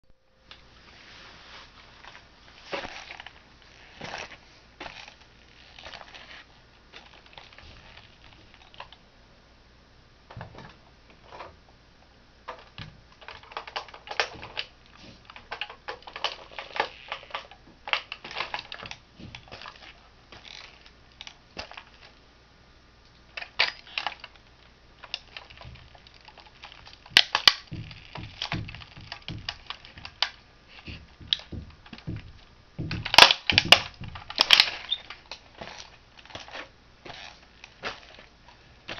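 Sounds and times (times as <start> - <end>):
plastic cracking: 2.0 - 9.0, 12.5 - 22.2, 23.1 - 38.9
toy car crushed under shoe: 15.3 - 22.1, 23.4 - 24.4, 25.0 - 32.1, 32.8 - 38.3.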